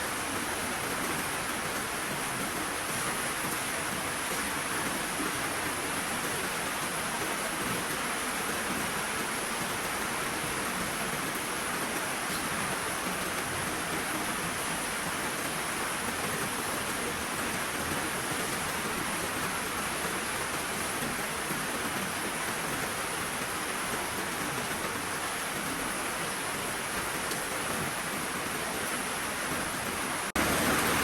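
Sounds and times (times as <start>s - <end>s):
heavy rain falling: 0.0s - 31.0s.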